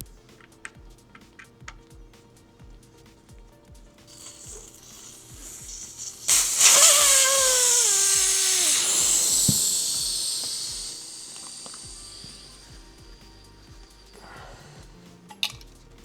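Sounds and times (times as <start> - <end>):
air hissing from tire valve: 0.0 - 16.0
falling whistle: 4.1 - 14.9.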